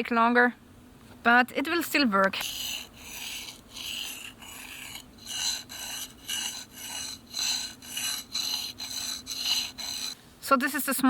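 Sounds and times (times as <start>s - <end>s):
knife scraping on sharpening stone: 2.4s - 10.2s.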